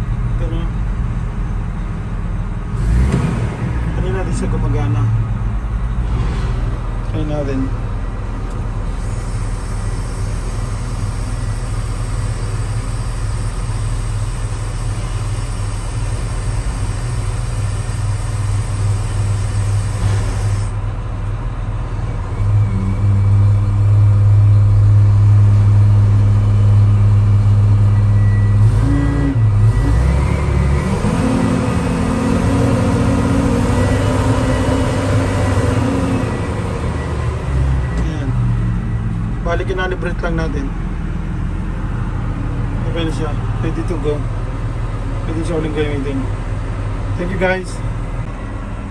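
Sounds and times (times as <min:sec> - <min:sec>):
car engine running: 0:00.0 - 0:20.8.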